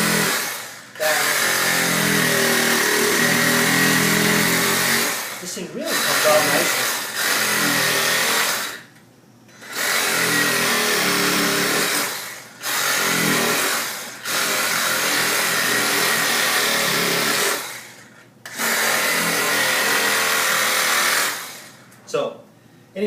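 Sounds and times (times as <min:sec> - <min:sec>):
reciprocating saw cutting rubber: 0:06.0 - 0:08.9.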